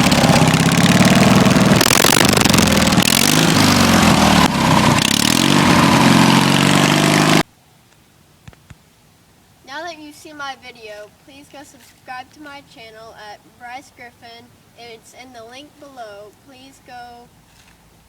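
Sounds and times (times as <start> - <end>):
lawn mower engine revving: 0.0 - 7.4.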